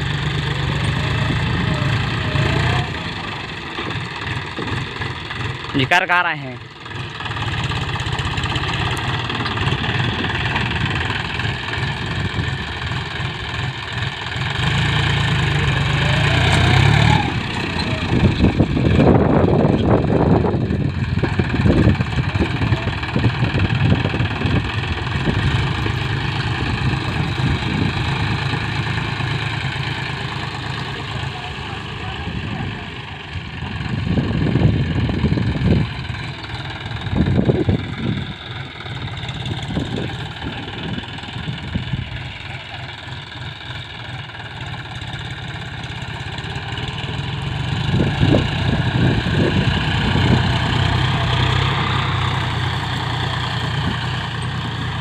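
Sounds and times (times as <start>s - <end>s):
ploughing machine engine running: 0.0s - 55.0s.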